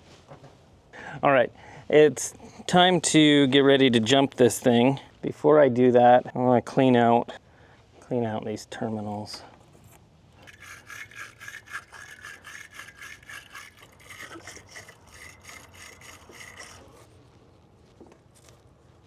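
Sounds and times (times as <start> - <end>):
scrubbing battery terminals: 10.4 - 17.0.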